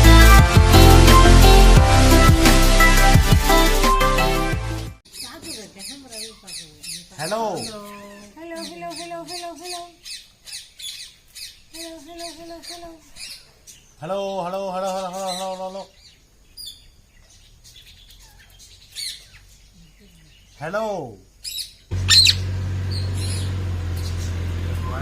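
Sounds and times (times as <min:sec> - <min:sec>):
parrots squawking and chirping: 0:05.1 - 0:20.6, 0:21.4 - 0:24.3.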